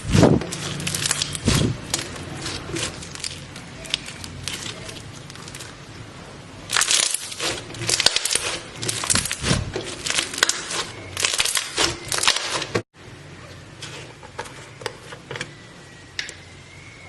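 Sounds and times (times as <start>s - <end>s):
slime squeezed crackling: 0.0s - 5.9s, 6.6s - 12.8s.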